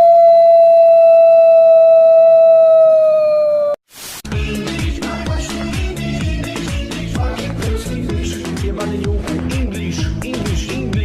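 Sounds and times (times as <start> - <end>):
electronic dance music: 4.2 - 11.0.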